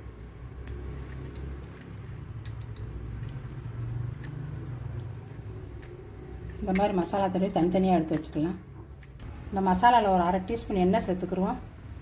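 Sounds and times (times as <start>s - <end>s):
hands squishing wet paste: 0.0s - 9.3s.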